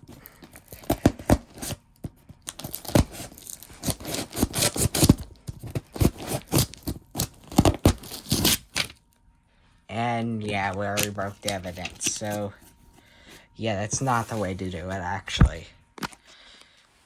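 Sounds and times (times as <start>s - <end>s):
paper and cardboard tearing: 0.0s - 1.8s, 2.5s - 9.0s.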